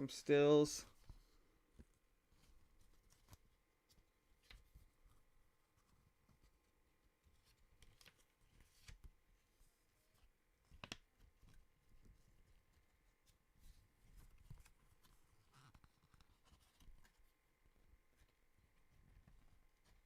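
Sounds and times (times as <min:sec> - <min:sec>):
paper rustling: 0:13.2 - 0:17.3.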